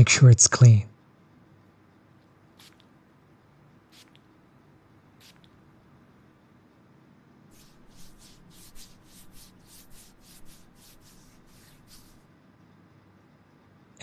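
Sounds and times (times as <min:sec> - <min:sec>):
wipe rubbing on skin: 0:02.5 - 0:03.0, 0:03.9 - 0:04.3, 0:05.2 - 0:05.6, 0:07.5 - 0:12.3.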